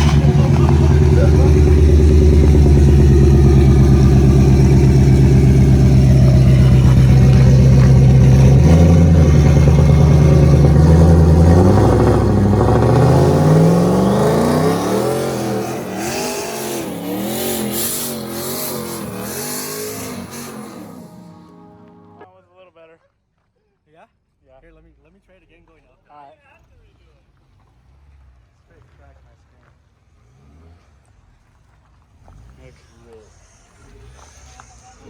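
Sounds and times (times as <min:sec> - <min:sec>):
car engine accelerating: 0:00.0 - 0:22.2, 0:30.0 - 0:35.0.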